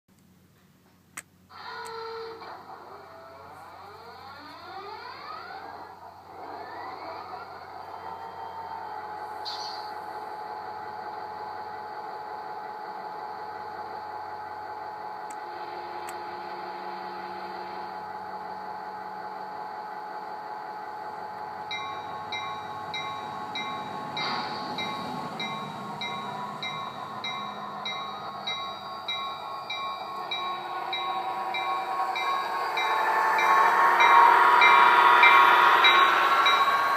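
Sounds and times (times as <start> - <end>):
diesel locomotive engine drone: 1.2 - 36.9
locomotive bell ringing: 21.4 - 36.9.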